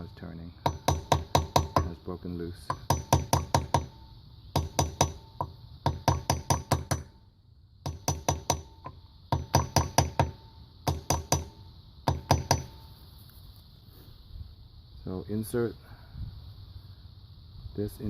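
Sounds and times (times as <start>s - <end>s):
hammer tapping on metal: 0.6s - 1.9s, 2.7s - 7.2s, 7.8s - 12.8s.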